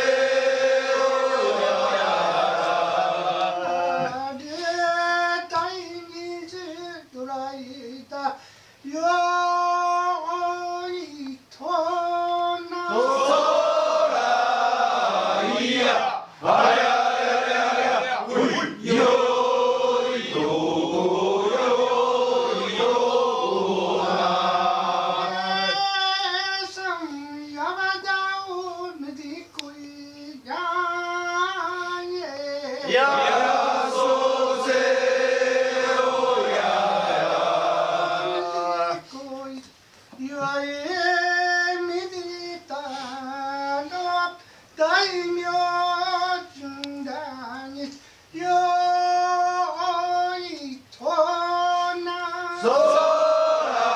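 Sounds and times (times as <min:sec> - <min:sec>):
group of voices chanting: 0:00.0 - 0:04.2, 0:12.9 - 0:25.8, 0:32.8 - 0:39.0
lead singer chanting: 0:00.0 - 0:53.9.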